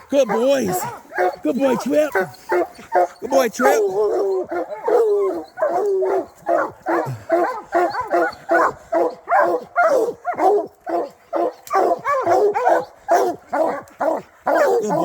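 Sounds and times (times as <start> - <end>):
hounds barking: 0.0 - 15.0.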